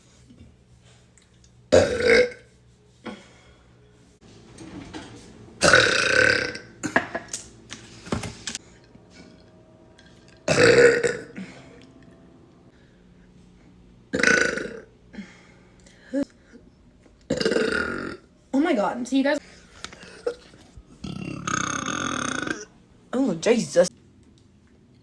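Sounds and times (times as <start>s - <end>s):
woman burping loudly: 1.7s - 2.5s, 5.6s - 7.1s, 10.5s - 11.9s, 14.1s - 15.2s, 17.3s - 18.3s, 21.0s - 22.8s.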